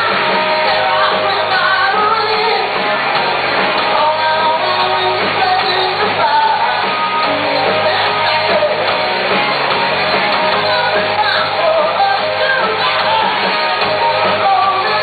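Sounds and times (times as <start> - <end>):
person singing: 0.0 - 3.0, 3.7 - 9.1, 10.1 - 15.0
rock band playing live: 0.0 - 15.0.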